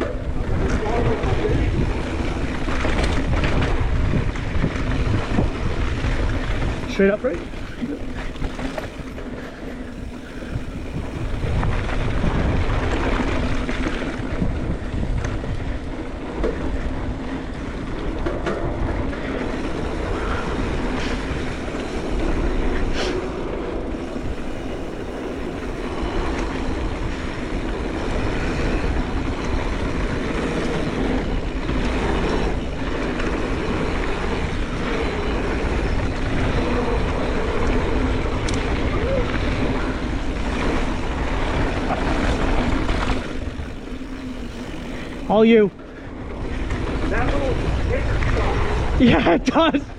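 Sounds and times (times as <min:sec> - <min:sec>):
bike rattling: 0:00.0 - 0:49.9
bike tyres rolling on dirt: 0:00.0 - 0:49.9.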